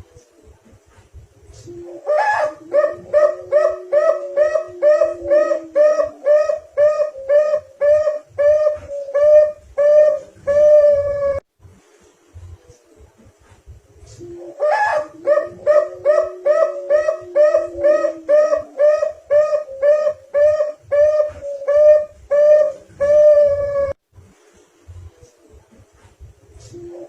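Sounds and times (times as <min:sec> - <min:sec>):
dove cooing: 0:01.5 - 0:11.4, 0:14.1 - 0:24.0, 0:26.6 - 0:27.0.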